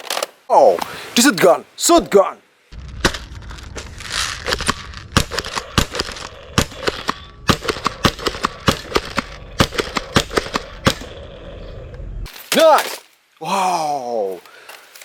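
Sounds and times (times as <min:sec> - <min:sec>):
toy shotgun firing sharp cracks: 0:04.5 - 0:11.1.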